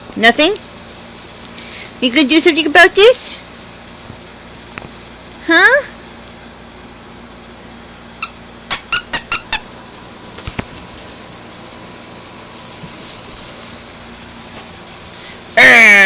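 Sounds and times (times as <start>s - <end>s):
squeaky dog toy: 8.2s - 9.7s
soft clicks and scuffling: 10.3s - 11.4s, 12.6s - 15.6s.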